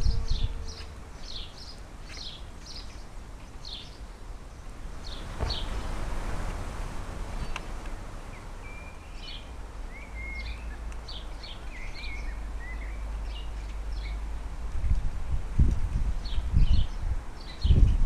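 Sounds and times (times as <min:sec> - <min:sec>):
birds chirping and whistling: 0:05.0 - 0:05.9, 0:08.3 - 0:14.2.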